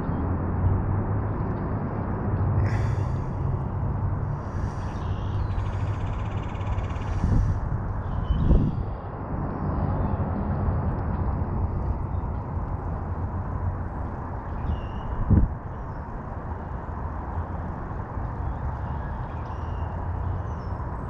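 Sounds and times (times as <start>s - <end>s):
low outdoor rumble: 0.0s - 21.0s
faint bird chirps: 4.5s - 7.3s.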